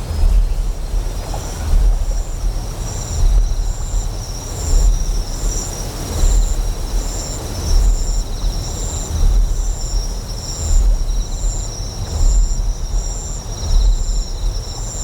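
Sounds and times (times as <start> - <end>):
deep generator hum pulsing: 0.0 - 15.0
insects chirping: 0.0 - 15.0.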